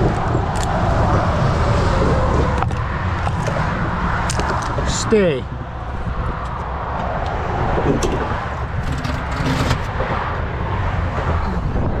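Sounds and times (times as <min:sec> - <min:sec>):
vehicle engine rumbling: 0:00.0 - 0:12.0
knocks and scrapes: 0:08.0 - 0:10.2.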